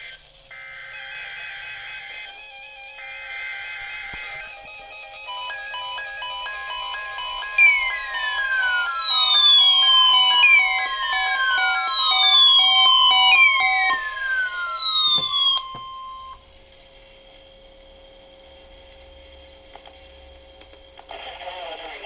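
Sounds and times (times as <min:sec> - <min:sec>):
held electronic tone: 0:00.0 - 0:16.4
beeping tones: 0:00.6 - 0:16.4
electronic falling sweeps: 0:03.2 - 0:15.7
faint radio hum and hiss: 0:16.3 - 0:22.0.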